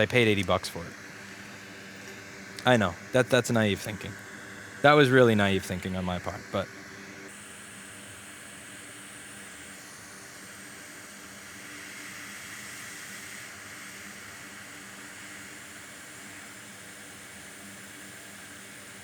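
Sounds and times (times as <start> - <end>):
air hissing: 7.3 - 17.7.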